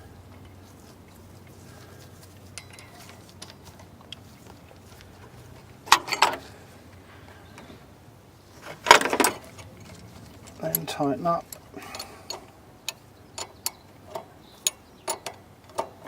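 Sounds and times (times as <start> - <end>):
metal tools clinking: 0.0 - 6.6, 8.6 - 16.0.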